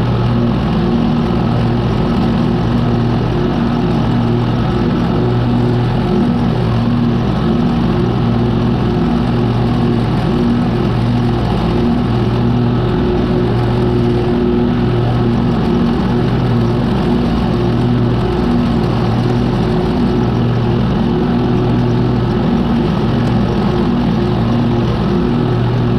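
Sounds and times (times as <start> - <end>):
lawn mower engine running: 0.0 - 25.9.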